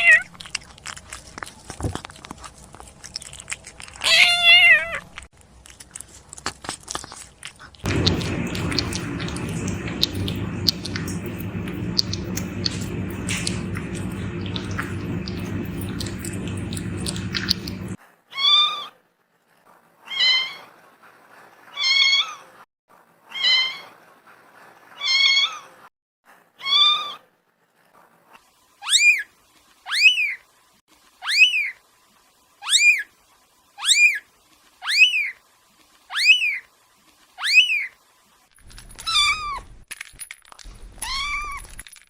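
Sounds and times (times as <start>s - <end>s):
muffled noise: 7.9s - 18.0s.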